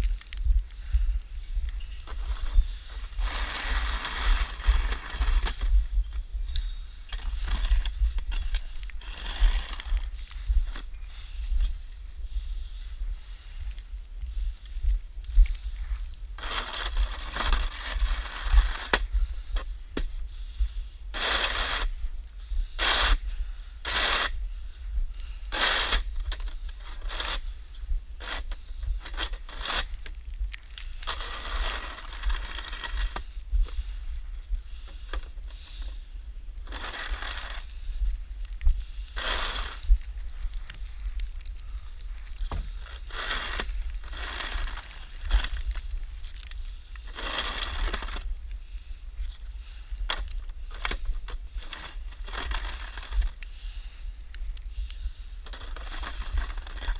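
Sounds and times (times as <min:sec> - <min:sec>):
snow shovel scraping snow: 0:02.1 - 0:05.8, 0:06.6 - 0:10.8, 0:16.4 - 0:19.1, 0:21.1 - 0:22.0, 0:22.8 - 0:23.2, 0:23.8 - 0:24.4, 0:25.5 - 0:27.5, 0:28.2 - 0:30.0, 0:31.1 - 0:33.2, 0:36.6 - 0:37.7, 0:39.2 - 0:39.9, 0:42.4 - 0:45.6, 0:47.0 - 0:48.2, 0:51.6 - 0:53.3, 0:55.5 - 0:56.9.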